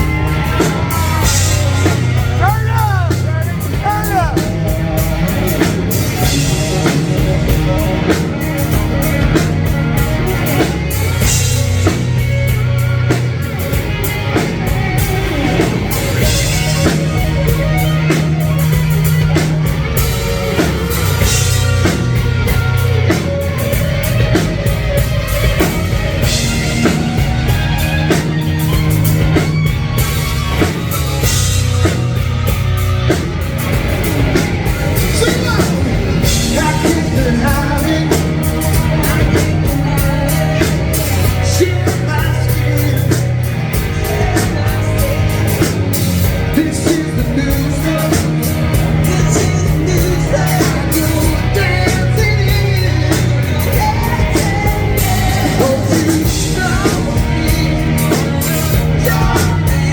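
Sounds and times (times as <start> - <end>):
bass guitar: 0.0 - 59.9
drum kit beat: 0.0 - 59.9
electric guitar: 0.0 - 59.9.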